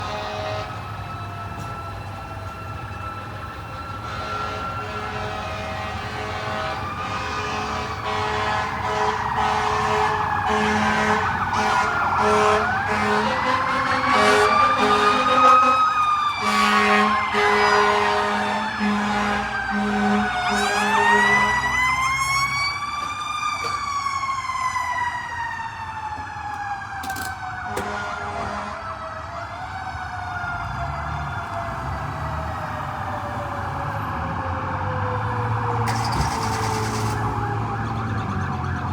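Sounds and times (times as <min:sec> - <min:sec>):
air horn blasts: 0:00.0 - 0:00.8, 0:04.0 - 0:22.7, 0:27.7 - 0:28.9
fire truck sirens wailing: 0:00.0 - 0:38.9.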